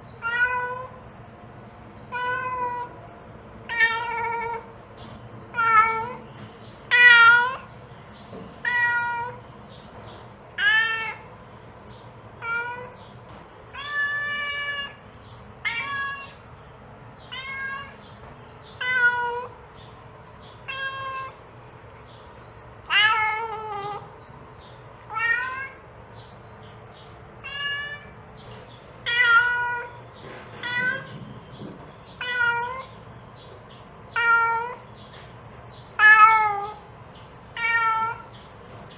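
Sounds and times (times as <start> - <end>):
cat meowing: 0.1 - 1.0, 2.0 - 3.0, 3.7 - 4.7, 5.5 - 6.2, 6.9 - 7.7, 8.6 - 9.4, 10.6 - 11.3, 12.4 - 13.0, 13.7 - 15.0, 15.6 - 16.4, 17.2 - 18.1, 18.7 - 19.6, 20.5 - 21.4, 22.9 - 24.2, 25.0 - 25.8, 27.4 - 28.2, 29.0 - 31.2, 32.1 - 33.0, 34.1 - 34.9, 36.0 - 36.9, 37.5 - 38.3.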